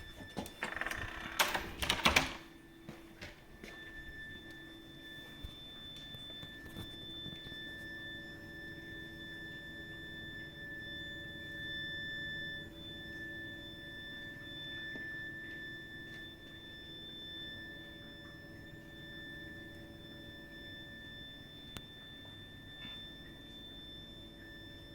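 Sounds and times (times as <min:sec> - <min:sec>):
high-pitched heating pipe whistle: 0:03.5 - 0:24.9.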